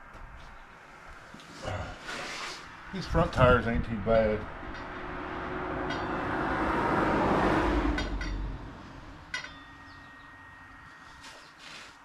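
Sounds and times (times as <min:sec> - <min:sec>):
vehicle passing on road: 0:02.6 - 0:11.3
small metallic clinks: 0:05.8 - 0:06.3, 0:08.0 - 0:08.5, 0:09.3 - 0:11.2.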